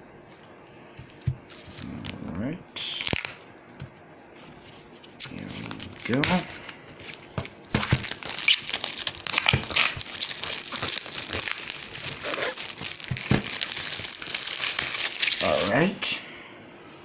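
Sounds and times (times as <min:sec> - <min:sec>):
plastic shrink-wrap tearing: 0:02.8 - 0:03.4, 0:05.0 - 0:15.8.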